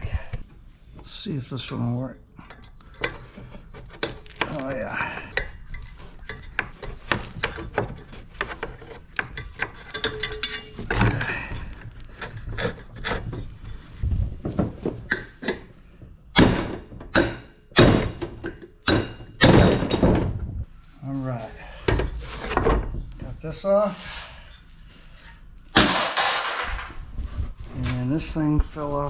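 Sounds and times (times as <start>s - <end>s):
loud thunks and knocks: 16.4s - 20.6s.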